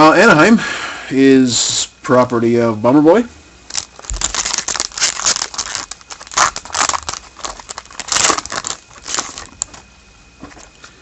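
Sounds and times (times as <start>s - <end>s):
foil wrapper crinkling: 3.7s - 10.7s.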